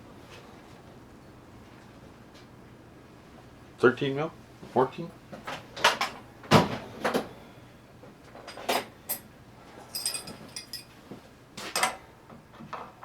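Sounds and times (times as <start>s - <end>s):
steel tools clinking: 8.5s - 11.0s
metallic ringing jingle: 9.9s - 10.9s.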